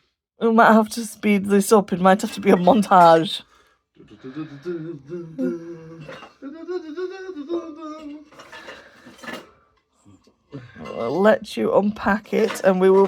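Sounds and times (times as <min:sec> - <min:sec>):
person humming a tune: 0:04.2 - 0:08.4.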